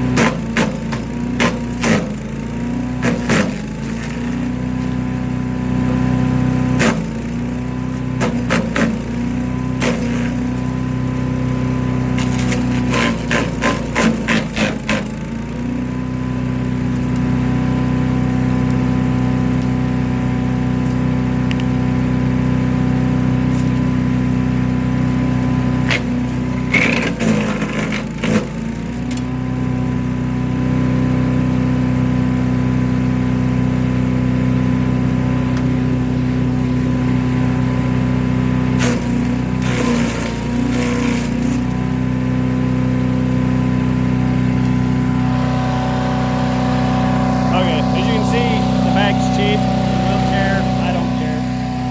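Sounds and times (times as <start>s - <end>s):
small gas engine running: 0.0s - 51.9s
sharp cracks of chipping: 0.2s - 2.1s, 3.0s - 4.4s, 12.1s - 15.1s, 38.8s - 41.8s.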